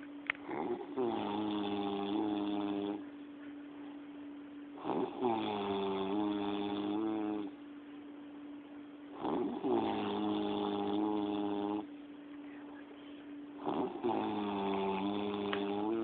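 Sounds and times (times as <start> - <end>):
man snoring: 0.4 - 3.0, 4.8 - 7.6, 9.1 - 11.9, 13.6 - 16.0.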